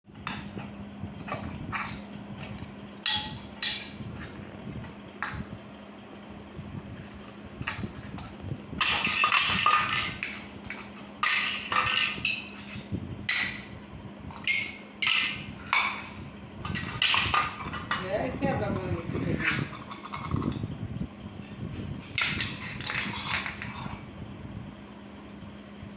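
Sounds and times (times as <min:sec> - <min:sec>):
child banging household objects: 0:01.3 - 0:05.5, 0:07.6 - 0:20.6, 0:22.1 - 0:24.0.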